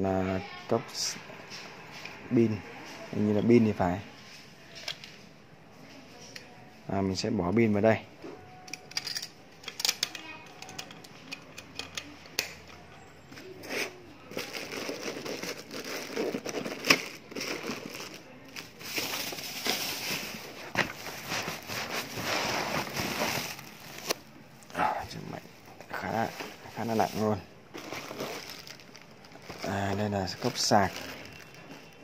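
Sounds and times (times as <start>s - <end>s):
clicks and knocks of parts: 8.7s - 12.8s
plastic packaging crinkling: 13.8s - 24.3s, 25.9s - 32.0s.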